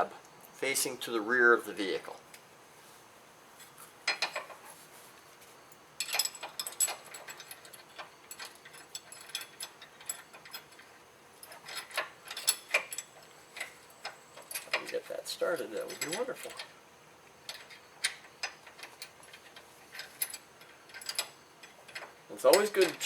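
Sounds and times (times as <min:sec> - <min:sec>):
metal bracket clicking and clinking: 0:04.1 - 0:04.6, 0:06.0 - 0:16.8, 0:17.4 - 0:23.0.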